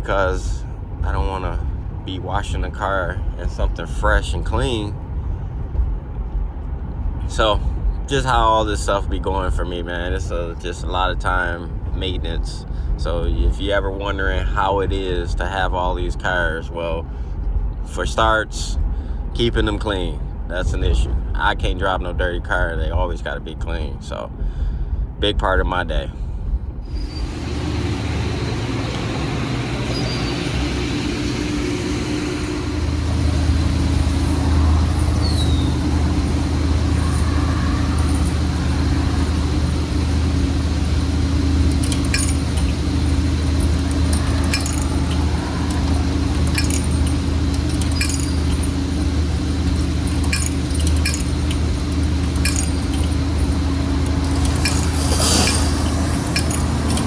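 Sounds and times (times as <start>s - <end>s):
car engine and road drone: 0.0s - 57.0s
light clinks and rattles: 27.0s - 57.0s.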